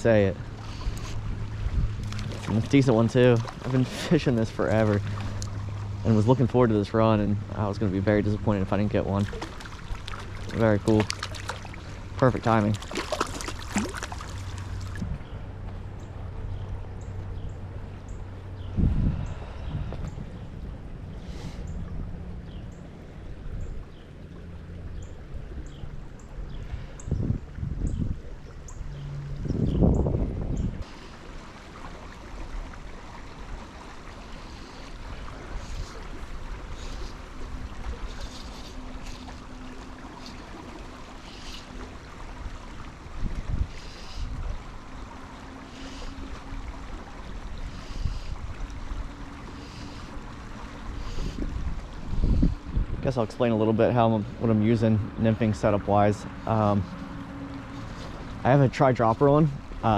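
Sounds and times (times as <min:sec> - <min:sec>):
wind gusting over microphone: 0:00.0 - 0:05.0, 0:18.5 - 0:22.6, 0:26.5 - 0:30.9, 0:42.3 - 0:44.7, 0:50.8 - 0:56.9
wind rumbling on microphone: 0:00.0 - 0:45.4, 0:46.6 - 0:59.9
stream water running: 0:00.0 - 0:59.9.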